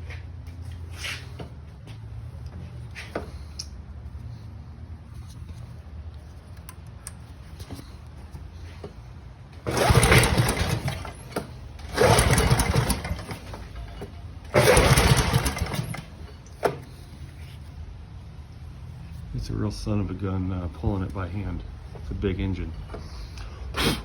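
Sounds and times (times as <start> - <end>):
recoil starter pulls cranking engine: 9.6 - 17.0.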